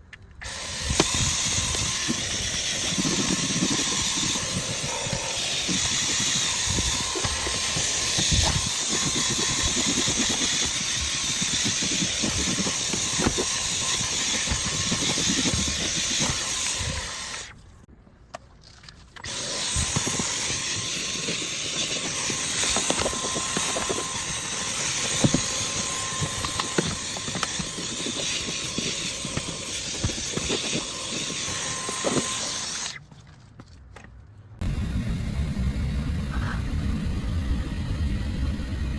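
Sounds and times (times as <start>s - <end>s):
upholstery cleaner motor hiss: 0.4s - 17.5s, 19.3s - 33.0s.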